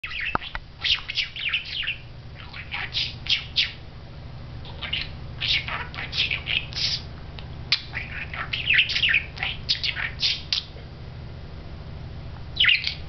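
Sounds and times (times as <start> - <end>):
budgerigar chirping and chattering: 0.0 - 3.8, 4.6 - 7.1, 7.7 - 10.7, 12.6 - 13.0
steady low hum: 0.0 - 13.0.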